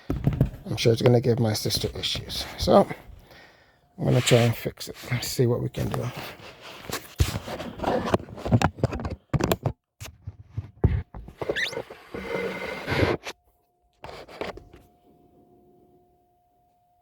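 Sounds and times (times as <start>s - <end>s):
objects scraping and knocking: 5.8s - 13.4s
faint steady tone: 12.2s - 17.0s.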